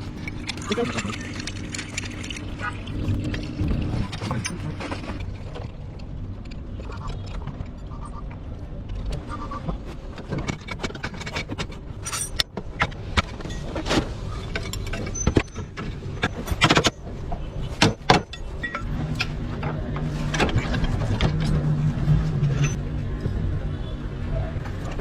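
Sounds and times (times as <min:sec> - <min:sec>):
metal tools clanking on car: 0:10.3 - 0:17.0.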